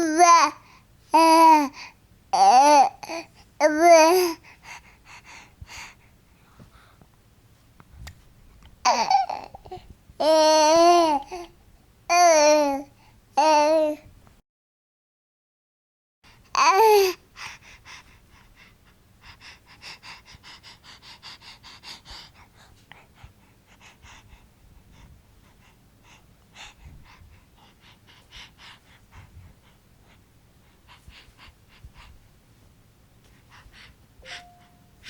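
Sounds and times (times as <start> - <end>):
baby gasping and panting: 16.4 - 32.2, 33.2 - 35.0.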